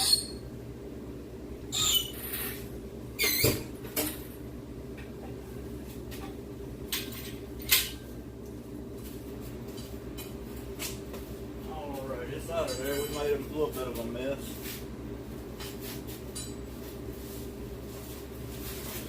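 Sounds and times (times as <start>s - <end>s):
metal squeaks and clanks: 0.0s - 0.4s, 1.7s - 3.8s
steady low hum: 0.0s - 19.0s.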